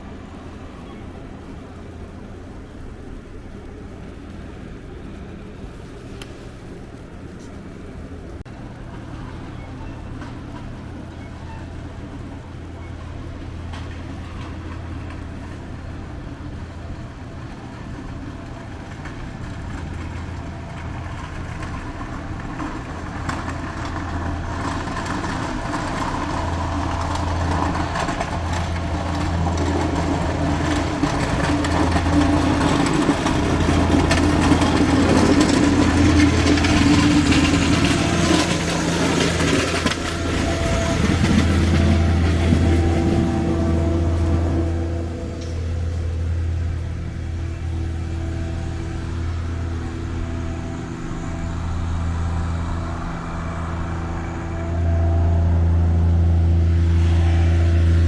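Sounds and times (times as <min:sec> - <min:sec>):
street traffic noise: 0:00.0 - 0:58.0
vehicle engine humming: 0:00.0 - 0:58.0.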